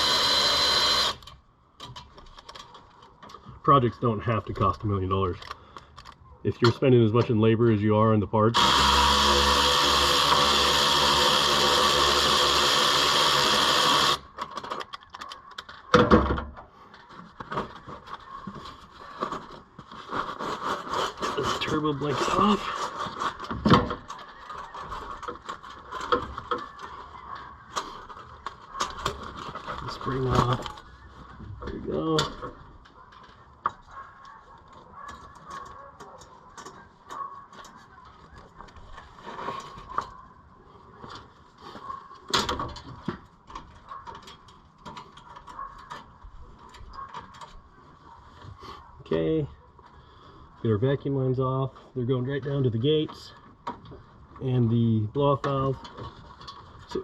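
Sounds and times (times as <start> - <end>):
power tool motor running: 0.0 - 1.2, 8.6 - 14.2
tools and parts rattling: 0.2 - 3.5, 14.0 - 40.2, 41.0 - 47.7, 55.5 - 57.0.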